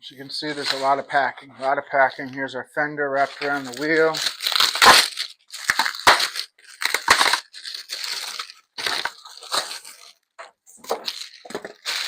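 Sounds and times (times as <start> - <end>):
packing material crumpled: 3.2 - 12.0.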